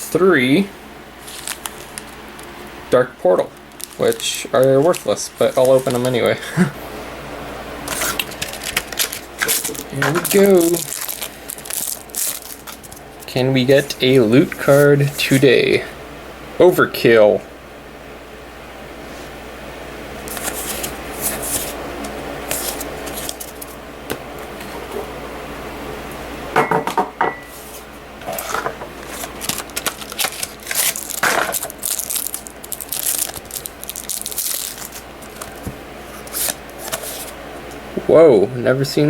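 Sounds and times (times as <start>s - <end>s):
trading cards rustling: 1.2s - 2.5s, 3.4s - 6.4s, 7.8s - 15.6s, 20.2s - 25.0s, 27.5s - 37.8s.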